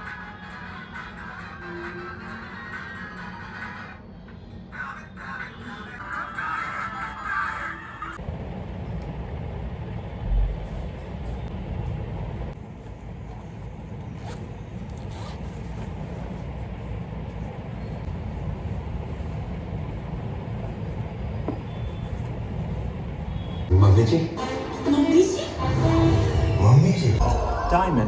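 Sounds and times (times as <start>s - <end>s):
city traffic rumble: 0.0s - 23.9s.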